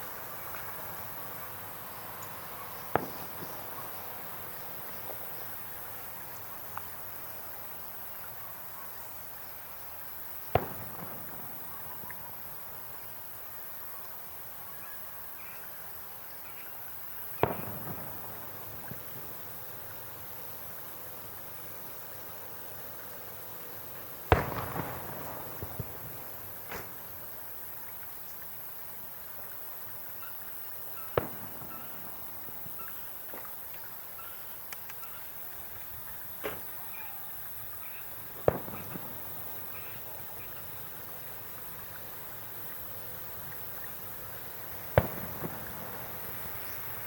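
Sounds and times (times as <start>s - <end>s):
fireworks booming: 0.0s - 7.2s, 10.2s - 13.2s, 17.1s - 27.8s, 30.2s - 33.6s, 35.6s - 47.0s
fireworks crackles: 0.0s - 13.9s, 15.4s - 47.0s.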